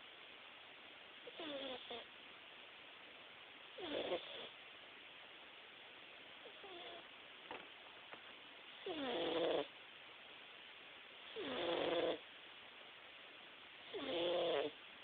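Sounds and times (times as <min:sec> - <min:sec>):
cat snoring: 0:01.3 - 0:02.1, 0:03.8 - 0:04.6, 0:06.5 - 0:07.1, 0:08.8 - 0:09.7, 0:11.3 - 0:12.2, 0:13.9 - 0:14.8.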